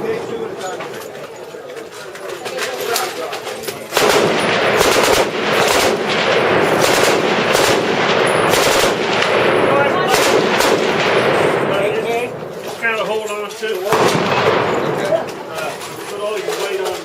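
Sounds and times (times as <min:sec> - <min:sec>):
machine gun bursts: 0:03.9 - 0:11.6.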